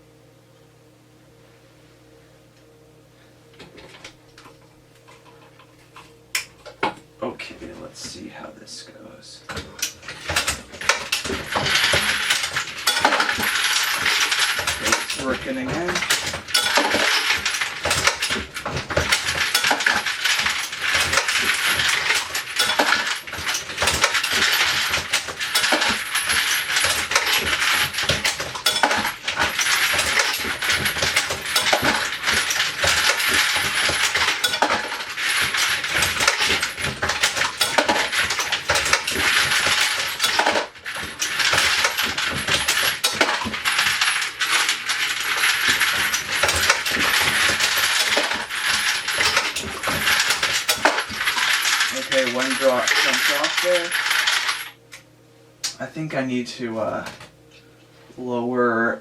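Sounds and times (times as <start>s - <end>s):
metallic clinking of brass cases: 9.5s - 54.8s
motor-driven bullet collator running: 9.5s - 54.9s.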